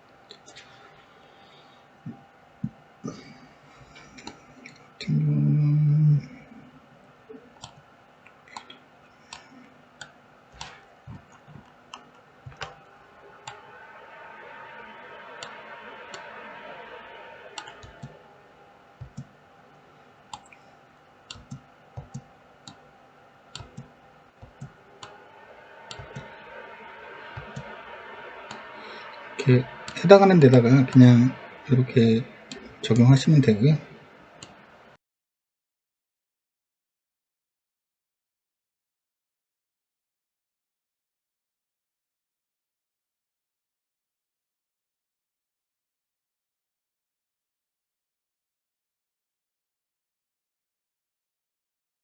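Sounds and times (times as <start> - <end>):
loud low tone: 12.8 - 19.0, 24.6 - 34.9
computer mouse clicking: 21.3 - 22.8, 23.5 - 25.1.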